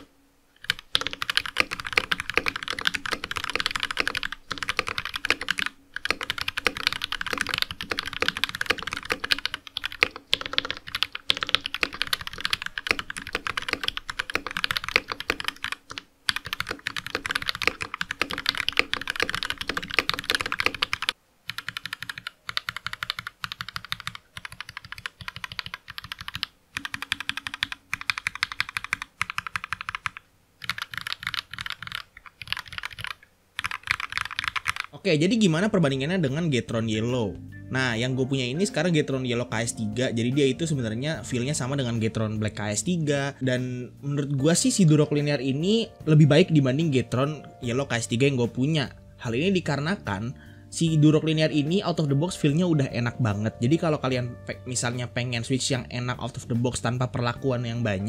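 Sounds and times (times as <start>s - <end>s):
mechanical keyboard typing: 0.0s - 34.9s.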